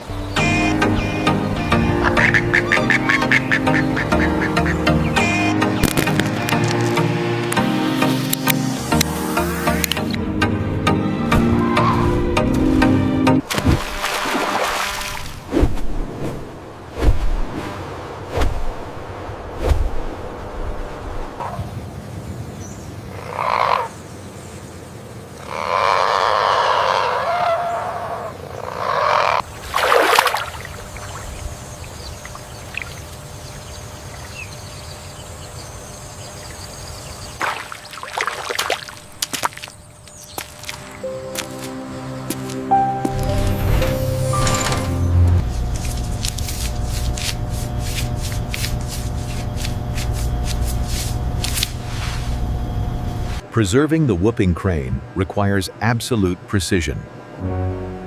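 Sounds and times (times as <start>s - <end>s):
crane calling: 0.0s - 6.0s
low hum: 38.8s - 53.5s
dry rustling: 45.4s - 52.5s.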